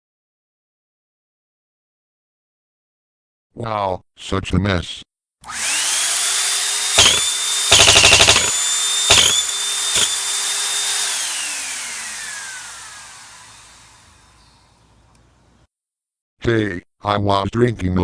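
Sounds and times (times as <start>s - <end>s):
vacuum cleaner motor whine: 5.4s - 14.4s
sharp clacks and rattle: 7.0s - 10.2s.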